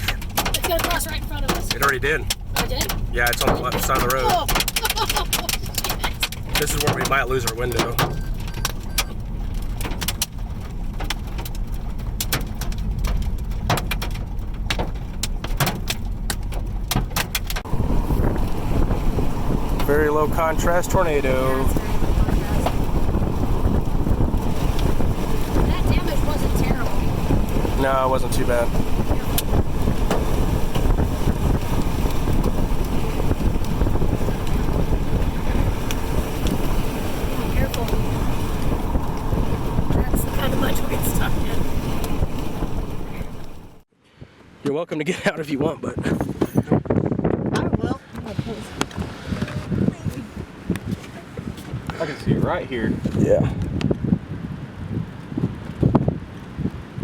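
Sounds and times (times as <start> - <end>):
sharp taps striking car: 0.0 - 9.1, 9.7 - 17.7
wind buffeting microphone: 0.0 - 43.9, 45.4 - 57.0
low road rumble: 0.0 - 57.0.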